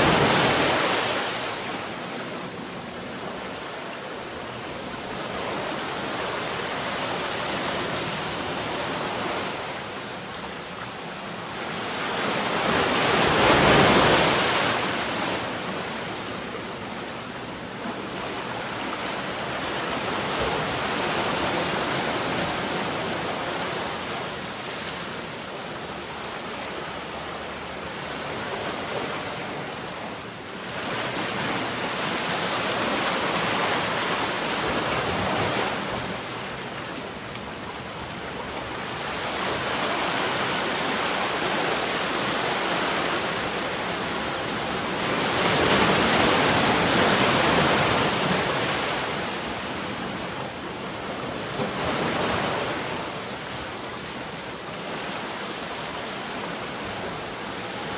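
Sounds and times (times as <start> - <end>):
sea waves breaking on shore: 0.0 - 57.9.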